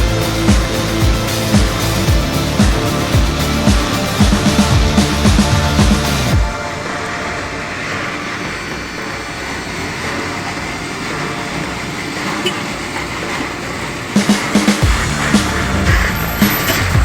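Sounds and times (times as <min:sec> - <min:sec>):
music: 0:00.0 - 0:08.5, 0:14.2 - 0:17.0
motor vehicle running on road: 0:00.0 - 0:17.0.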